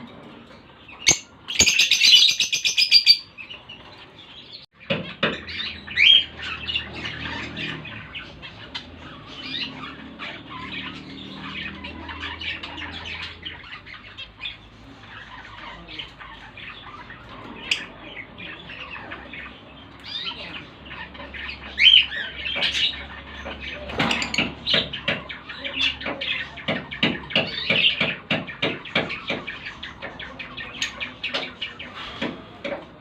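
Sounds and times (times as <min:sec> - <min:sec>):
lovebirds chattering and squawking: 0:00.0 - 0:33.0.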